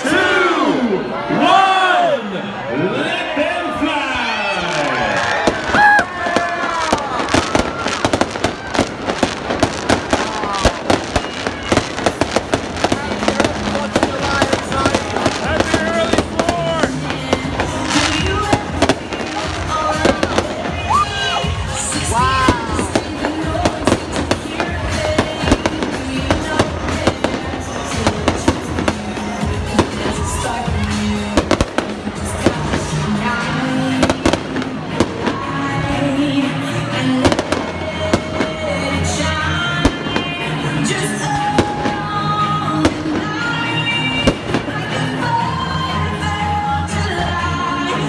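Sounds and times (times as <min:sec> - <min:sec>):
music playing: 0:00.0 - 0:48.0
fireworks bangs and crackling pops: 0:04.7 - 0:33.1, 0:33.9 - 0:35.6, 0:37.2 - 0:45.0.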